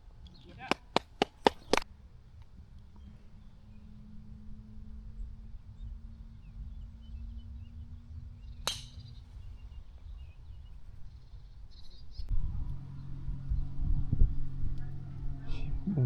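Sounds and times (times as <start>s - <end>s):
golf club striking ball: 0.7s - 1.8s, 8.4s - 9.7s
wind rumble on microphone: 1.6s - 16.0s.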